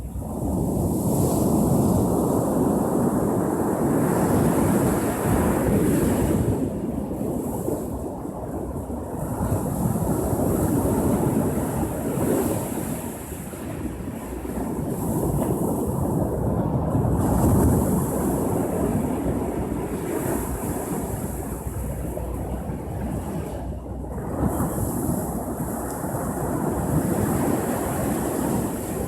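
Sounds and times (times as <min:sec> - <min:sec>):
ocean waves breaking on shore: 0:00.0 - 0:29.0
wind buffeting microphone: 0:00.0 - 0:29.0.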